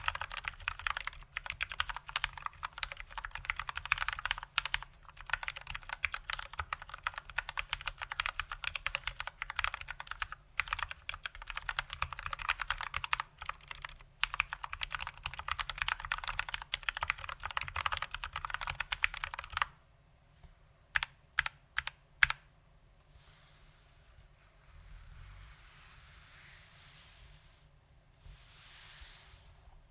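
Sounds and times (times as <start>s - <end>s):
fast typing on mechanical keyboard: 0.0s - 19.8s, 21.0s - 22.4s.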